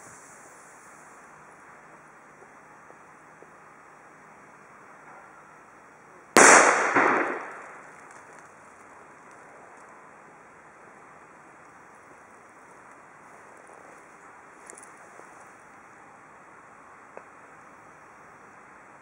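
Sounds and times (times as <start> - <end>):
firecracker bang: 6.4 - 8.0.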